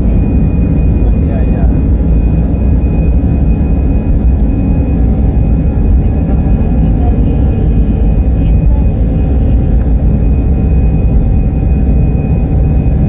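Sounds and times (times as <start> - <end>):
airliner engines rumbling: 0.0 - 13.0
high engine whine: 0.0 - 13.0.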